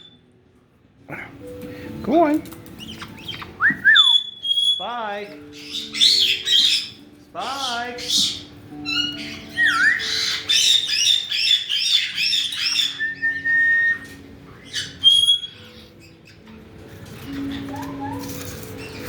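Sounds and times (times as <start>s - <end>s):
parrots squawking: 2.7s - 19.0s
parrot whistle: 2.8s - 4.9s, 8.2s - 15.8s.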